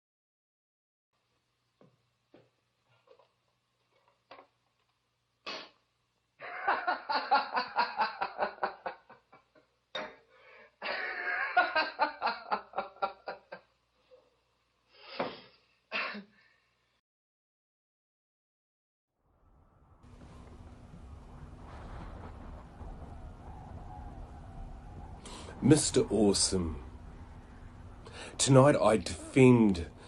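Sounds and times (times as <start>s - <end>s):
man laughing: 6.4s - 9.6s, 10.8s - 13.6s, 29.1s - 29.6s.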